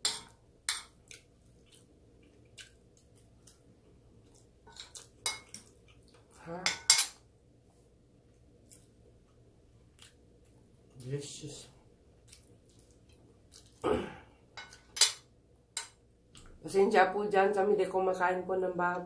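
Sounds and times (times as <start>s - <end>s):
cutlery clinking against a dish: 6.6s - 7.2s, 14.6s - 16.0s.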